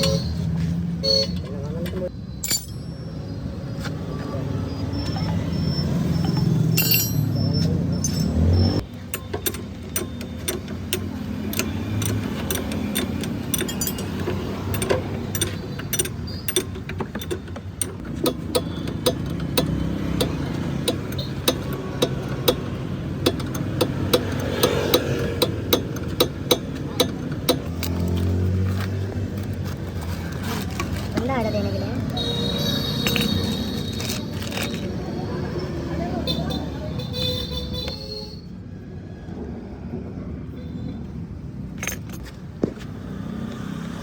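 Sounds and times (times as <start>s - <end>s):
hand tools knocking on metal: 8.0s - 27.7s.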